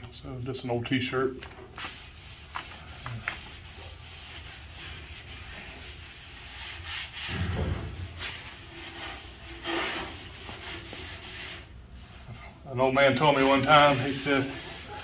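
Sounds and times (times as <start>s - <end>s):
low thump: 7.3s - 8.2s
cloth wiping over bare steel: 13.3s - 15.0s.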